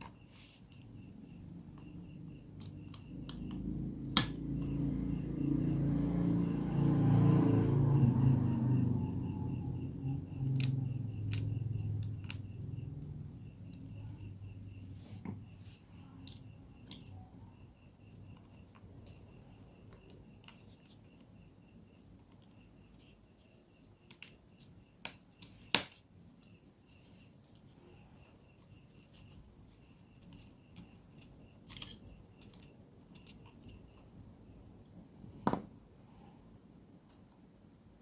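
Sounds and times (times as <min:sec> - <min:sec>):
tools and plastic parts clicking: 0:28.4 - 0:33.8.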